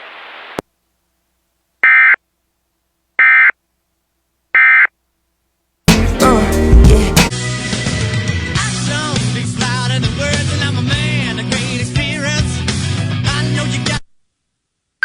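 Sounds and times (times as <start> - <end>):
rock music on radio: 5.9 - 14.0.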